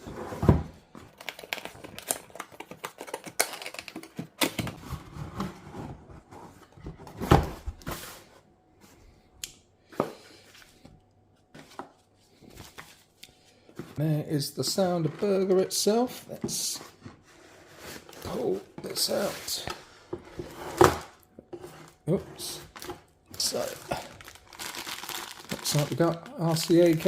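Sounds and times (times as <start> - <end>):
wrapper rustling: 22.7 - 27.0.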